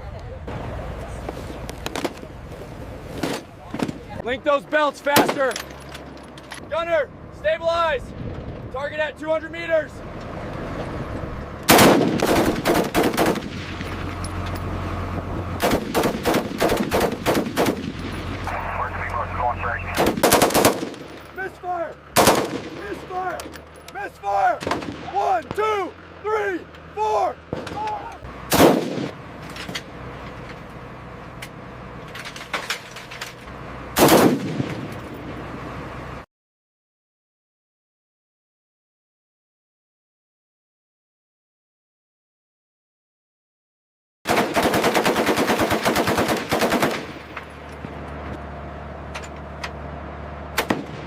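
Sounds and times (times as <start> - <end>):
steady low hum: 11.1 - 24.0
machine gun bursts: 11.7 - 13.6, 15.6 - 17.9, 20.0 - 21.2, 22.2 - 22.8, 44.3 - 47.2
scattered lighter shots: 11.7 - 14.0, 15.6 - 19.0, 19.9 - 21.2, 22.2 - 23.5, 24.6 - 25.4, 28.5 - 29.2, 34.0 - 35.0, 44.3 - 47.3.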